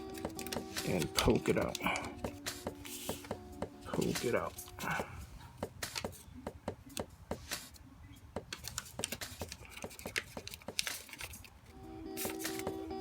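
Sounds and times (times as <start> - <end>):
paper crinkling while folding: 0.0 - 5.3, 8.6 - 12.8.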